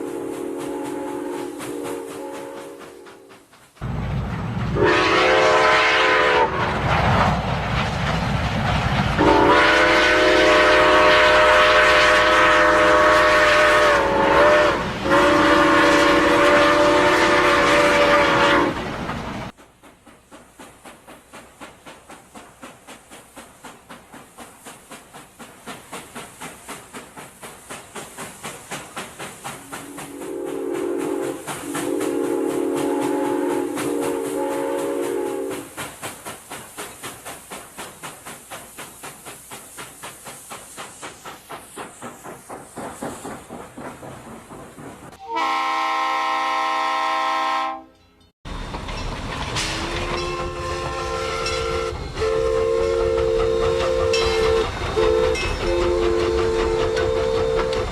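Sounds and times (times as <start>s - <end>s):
train horn blasts: 0.0s - 3.3s, 4.8s - 6.8s, 9.2s - 18.8s, 30.1s - 35.7s, 45.2s - 48.0s, 50.1s - 57.9s
steam locomotive chuffing: 0.0s - 47.8s, 48.5s - 57.9s.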